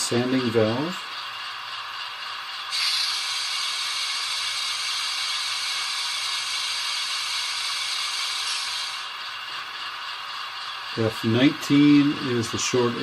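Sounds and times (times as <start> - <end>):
steady air hiss: 2.1 - 10.3.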